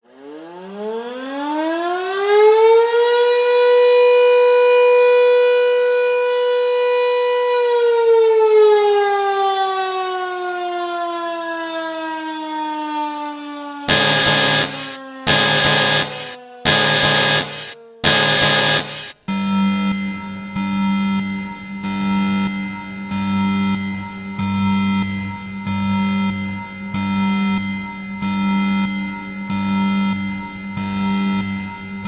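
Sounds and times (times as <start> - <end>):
civil defense siren wailing: 0.1 - 17.4
harsh buzzing tone: 13.9 - 19.2.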